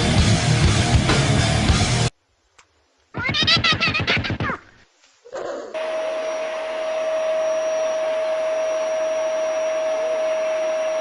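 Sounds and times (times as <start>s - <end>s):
electric fan motor running: 5.8s - 11.0s.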